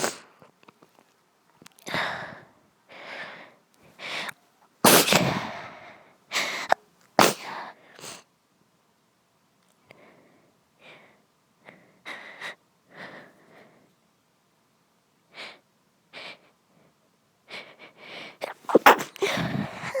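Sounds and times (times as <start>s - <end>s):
woman sneezing: 4.8s - 5.5s, 6.4s - 7.6s, 18.4s - 20.0s.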